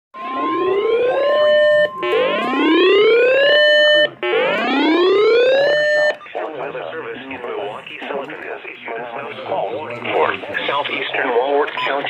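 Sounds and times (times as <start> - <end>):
electronic alert siren whoop: 0.2 - 6.2
steady alarm tone: 0.2 - 6.4.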